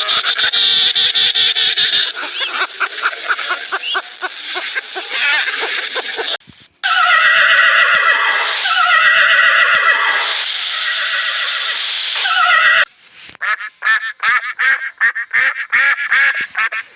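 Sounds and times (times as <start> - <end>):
rapid repeated animal sounds: 0.0 - 16.9
horse whinnying: 6.8 - 11.6.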